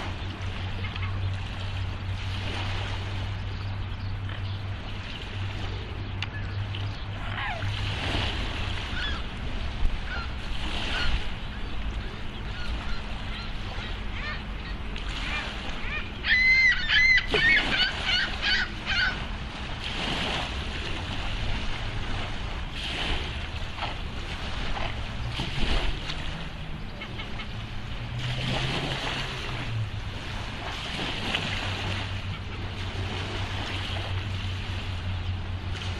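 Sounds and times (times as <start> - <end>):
water noise: 0.0 - 35.9
swans honking: 12.6 - 19.3.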